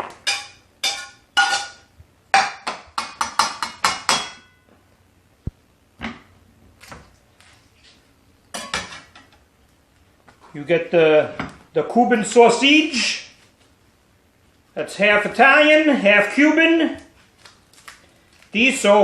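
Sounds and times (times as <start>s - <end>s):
metal utensil clinking on pan: 0.2s - 1.8s.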